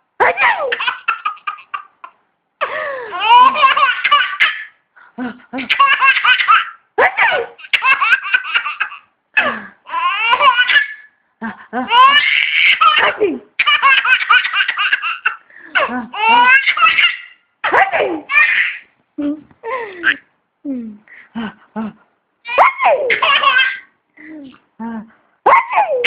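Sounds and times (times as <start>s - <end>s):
baby laughing: 0.3s - 4.8s, 5.6s - 11.1s, 11.8s - 18.9s, 19.9s - 20.3s, 22.5s - 23.9s.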